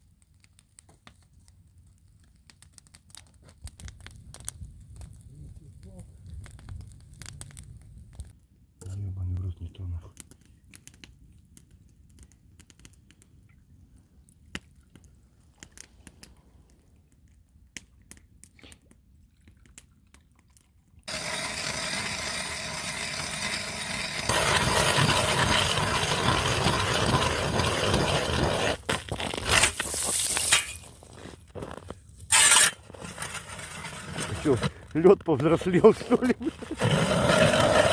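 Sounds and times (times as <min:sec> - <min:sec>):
ice auger grinding through ice: 0:21.1 - 0:30.4, 0:31.0 - 0:34.9, 0:36.3 - 0:37.9
faint scrapes and clicks: 0:26.7 - 0:35.0.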